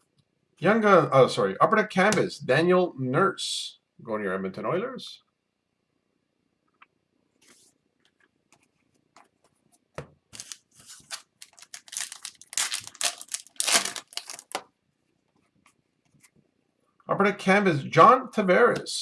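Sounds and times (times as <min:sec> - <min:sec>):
foil wrapper crinkling: 0:10.3 - 0:14.6.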